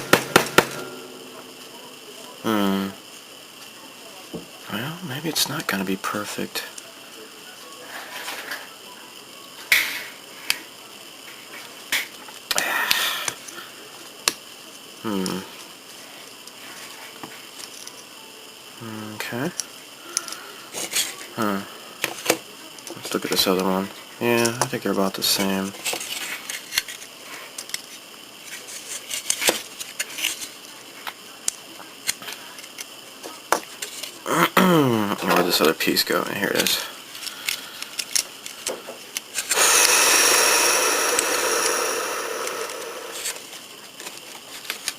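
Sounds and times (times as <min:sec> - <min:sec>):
plastic parts clicking and tapping: 0:37.2 - 0:39.5.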